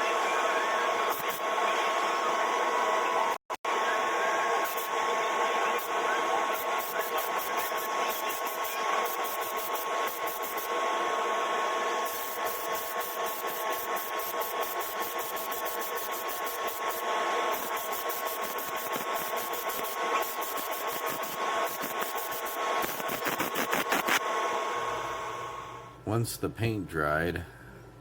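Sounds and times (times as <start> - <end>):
small motor running: 4.6 - 24.2.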